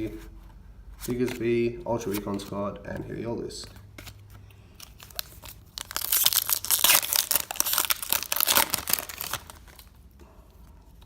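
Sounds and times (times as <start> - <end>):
foil wrapper tearing and crinkling: 4.8 - 10.0.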